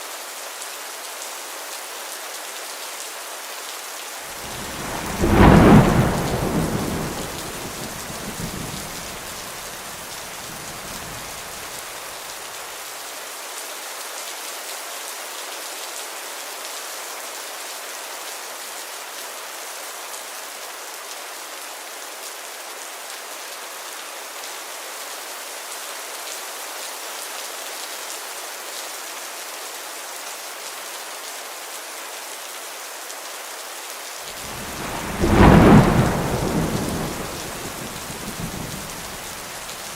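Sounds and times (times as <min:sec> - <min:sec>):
heavy rain falling: 0:00.2 - 0:13.4, 0:25.5 - 0:39.9
thunderclap rumbling: 0:04.4 - 0:11.7, 0:34.4 - 0:39.9.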